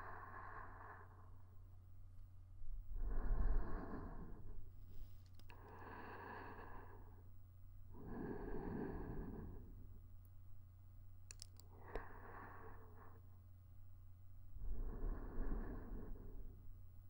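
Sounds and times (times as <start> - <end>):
woman breathing softly: 0.0 - 1.7, 2.6 - 10.1, 11.3 - 13.5, 14.4 - 16.9
steady low hum: 0.0 - 17.0
faint clicks: 5.2 - 5.8, 11.2 - 12.2.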